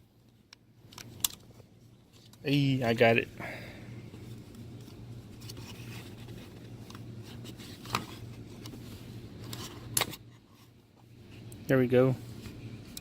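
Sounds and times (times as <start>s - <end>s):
steady low hum: 0.0s - 13.0s
hands rustling plastic parts: 4.0s - 11.5s.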